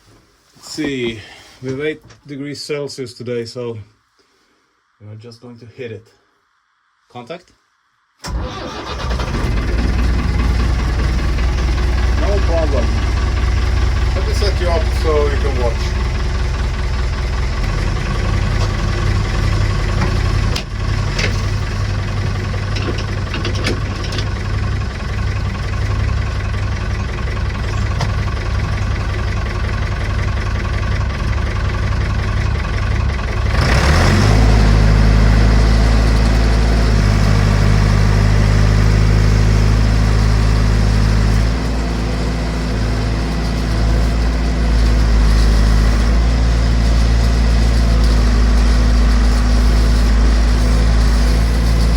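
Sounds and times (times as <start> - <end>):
backhoe engine idling: 8.3 - 51.9
sharp engine knocks: 22.2 - 24.4.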